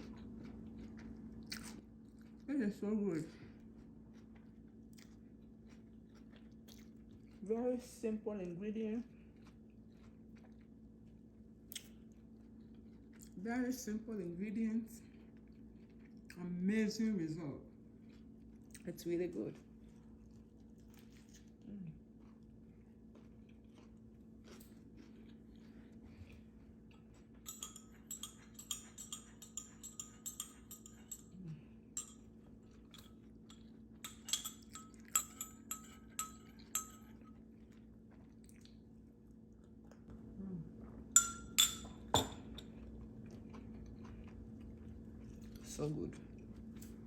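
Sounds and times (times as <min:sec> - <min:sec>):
faint chewing: 0:00.0 - 0:02.5, 0:03.1 - 0:07.5, 0:08.4 - 0:13.4, 0:14.9 - 0:16.5, 0:17.7 - 0:41.2, 0:42.4 - 0:47.0
tableware clinking: 0:27.4 - 0:31.4, 0:32.0 - 0:37.4, 0:41.2 - 0:42.7.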